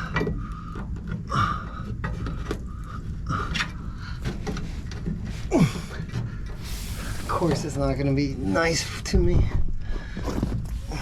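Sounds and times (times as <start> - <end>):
man breathing with strain: 0.0 - 7.3
scraping and clicking of plastic: 0.0 - 7.8, 9.0 - 11.0.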